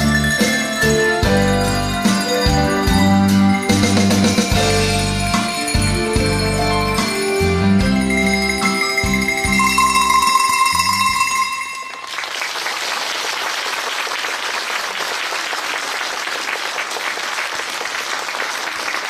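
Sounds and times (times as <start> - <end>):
low accompaniment: 0.0 - 11.8
cowbell ensemble playing: 0.0 - 12.1
audience applause: 11.4 - 19.0.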